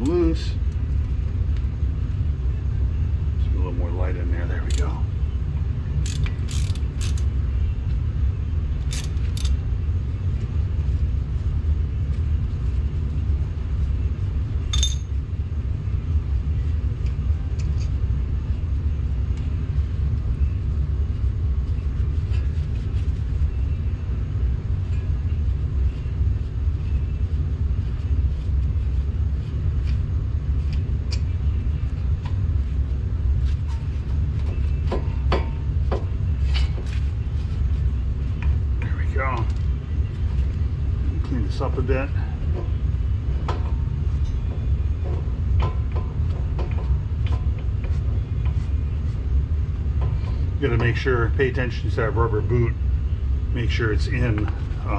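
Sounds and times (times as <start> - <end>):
steady low rumble: 0.0 - 54.9
metallic clinks of hand tools: 14.7 - 15.1.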